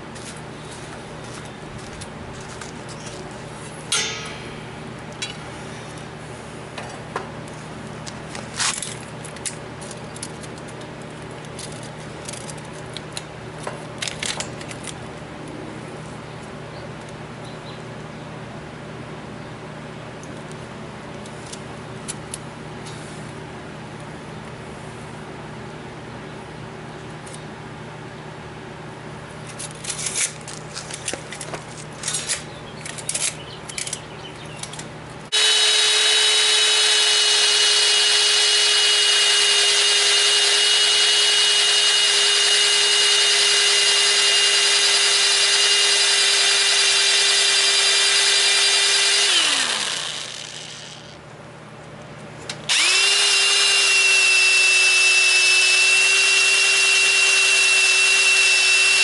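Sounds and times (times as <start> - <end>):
power tool whining: 35.3 - 51.2, 52.7 - 59.0.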